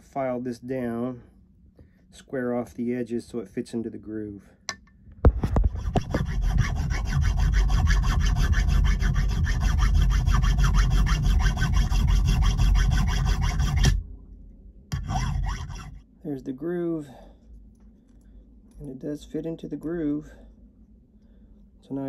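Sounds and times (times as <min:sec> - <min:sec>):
sharp knocks: 0:04.7 - 0:06.3
file rasping against metal key: 0:05.5 - 0:14.0, 0:14.9 - 0:16.0.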